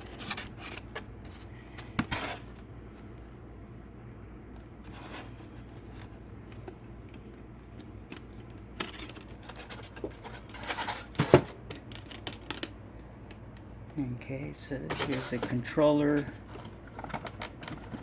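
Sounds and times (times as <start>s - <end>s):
box packaging rustling: 0.0s - 3.0s, 14.9s - 18.0s.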